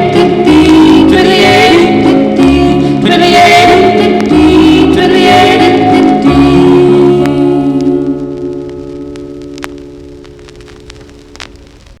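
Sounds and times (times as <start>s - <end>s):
vocal group singing over instruments: 0.0s - 8.3s.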